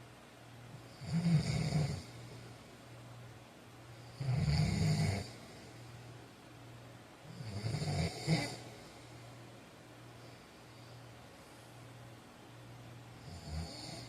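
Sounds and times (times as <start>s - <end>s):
faint low hum: 0.0s - 14.0s
man snoring: 0.9s - 2.2s, 4.1s - 5.4s, 7.3s - 8.7s, 13.2s - 14.0s.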